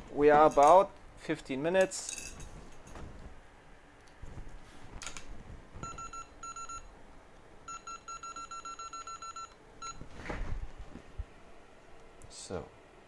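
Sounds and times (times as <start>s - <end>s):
short electronic beeps: 5.8s - 6.9s, 7.7s - 10.0s.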